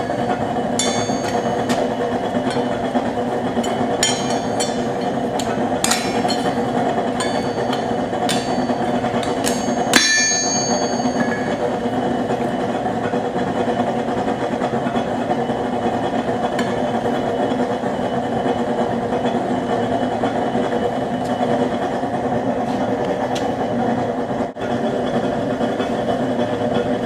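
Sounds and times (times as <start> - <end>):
hammer ringing on metal: 0.0 - 1.9, 3.6 - 11.7
forge burner roar: 0.0 - 27.0.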